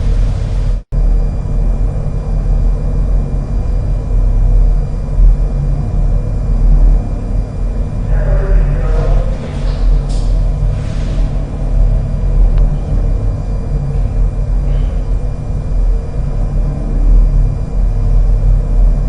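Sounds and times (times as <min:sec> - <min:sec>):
faint hum tones: 0:00.0 - 0:19.0
low rumble: 0:00.0 - 0:19.0
faint voice: 0:08.1 - 0:09.7.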